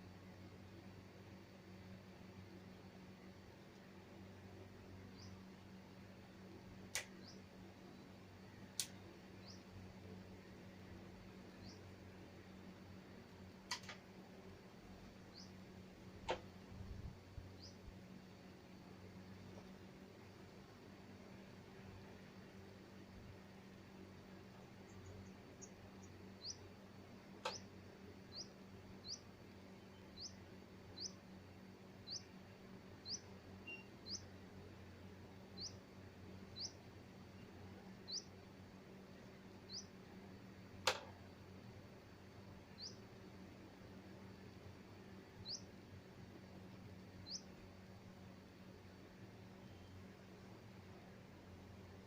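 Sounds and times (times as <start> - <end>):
faint low hum: 0.0 - 52.0
sharp clicks: 6.9 - 7.3, 8.7 - 9.0, 13.6 - 14.0, 40.8 - 41.2.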